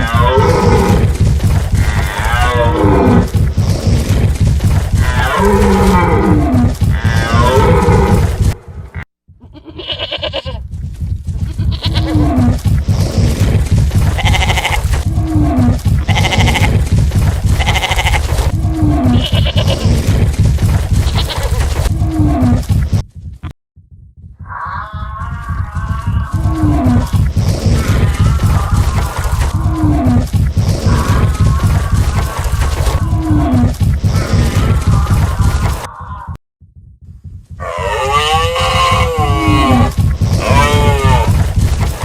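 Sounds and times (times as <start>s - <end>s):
pounding hooves rumble: 0.0s - 9.0s, 9.7s - 42.0s
goat bleats: 9.4s - 10.6s, 11.4s - 12.2s, 14.1s - 15.0s, 16.0s - 16.8s, 17.5s - 18.4s, 19.1s - 19.8s
falling bellowing calls: 37.6s - 41.5s.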